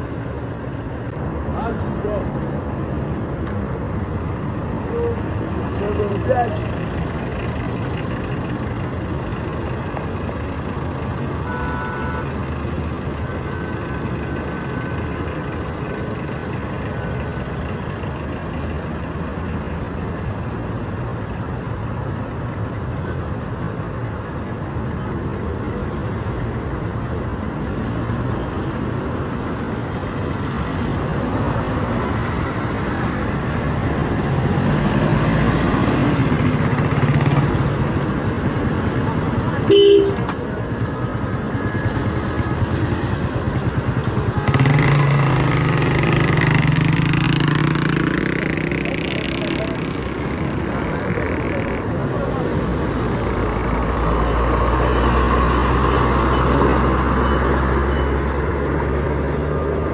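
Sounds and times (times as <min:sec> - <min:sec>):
road traffic rumble: 0:00.0 - 0:59.9
heavy vehicle passing: 0:40.3 - 0:59.9.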